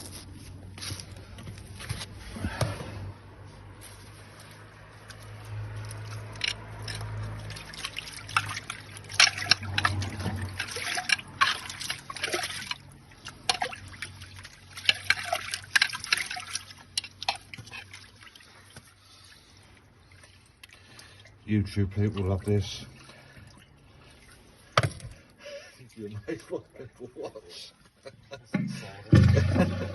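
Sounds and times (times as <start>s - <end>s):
water trickling in a drain: 4.3s - 27.3s
sharp splashes and knocks: 5.0s - 19.0s, 23.4s - 25.2s, 29.1s - 29.9s.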